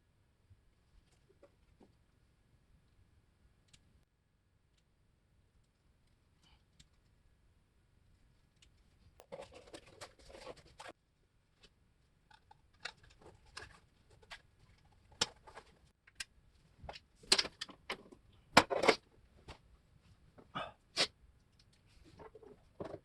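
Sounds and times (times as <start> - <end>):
rustling and scraping: 8.2 - 20.5, 21.6 - 23.0
sharp clicks and knocks of parts: 15.0 - 19.0.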